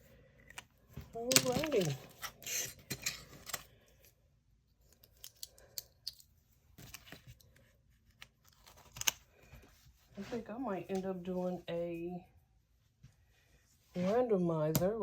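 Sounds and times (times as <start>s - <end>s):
paper money rustling: 1.2s - 3.7s.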